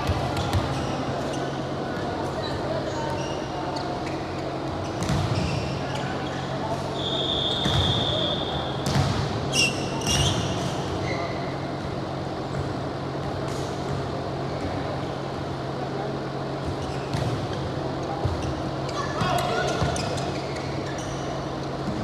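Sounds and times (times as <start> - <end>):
steady hall hum: 0.0 - 22.0
shoe squeaks: 0.2 - 1.8, 2.4 - 11.6, 16.8 - 21.8
ball thumping on court: 5.0 - 5.4, 8.8 - 9.4.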